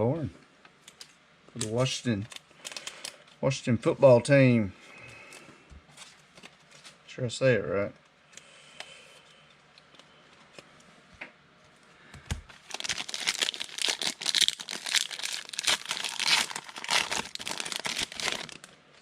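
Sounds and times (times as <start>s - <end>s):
foil wrapper tearing and crinkling: 12.6s - 18.7s.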